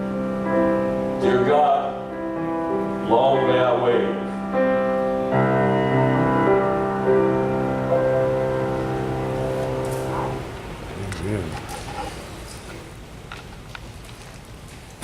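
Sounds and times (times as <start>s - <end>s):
sustained keyboard chords: 0.0s - 11.8s.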